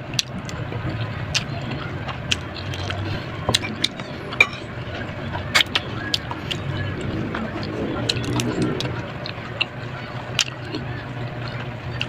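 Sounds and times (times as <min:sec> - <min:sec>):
low steady hum: 0:00.0 - 0:12.0
vegetables being chewed: 0:00.1 - 0:04.6.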